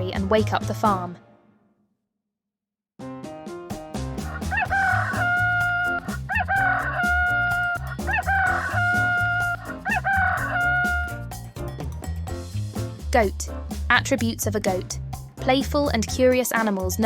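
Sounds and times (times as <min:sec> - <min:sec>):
background music with steady beat: 0:03.0 - 0:17.0
rooster crowing: 0:04.3 - 0:11.2.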